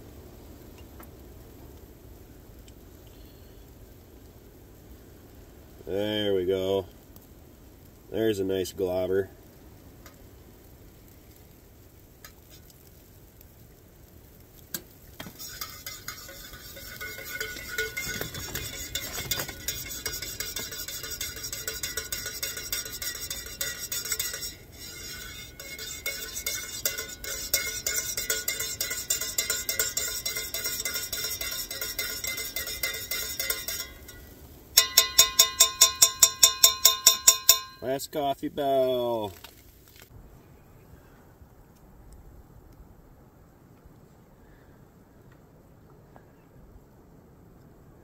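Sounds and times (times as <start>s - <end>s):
spoon clinking in coffee mug: 25.6s - 34.2s, 34.8s - 37.8s
ringing taps on mug: 26.1s - 34.2s, 34.8s - 37.8s.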